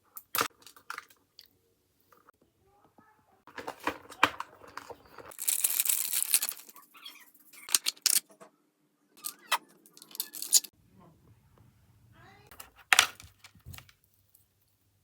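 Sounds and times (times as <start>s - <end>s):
clay beads rattling: 4.5s - 6.8s, 9.2s - 10.7s.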